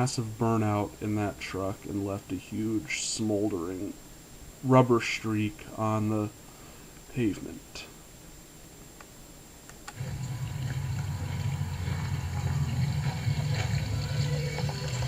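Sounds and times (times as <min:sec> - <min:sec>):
low rumble with watery hiss: 0:00.0 - 0:15.0.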